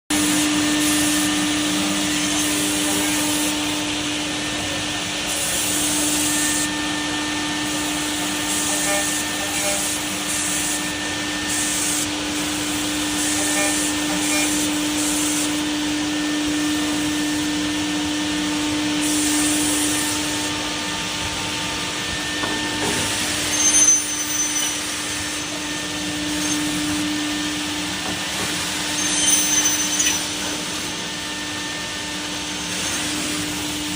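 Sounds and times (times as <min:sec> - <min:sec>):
cnc machine spindle whirring: 0:00.1 - 0:33.9
machine cutting metal: 0:00.1 - 0:33.9
high whine: 0:20.0 - 0:33.8.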